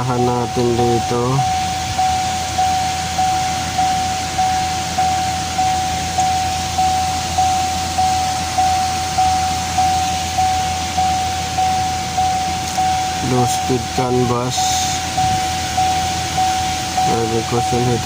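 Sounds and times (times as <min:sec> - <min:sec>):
car warning chime: 0:00.0 - 0:18.0.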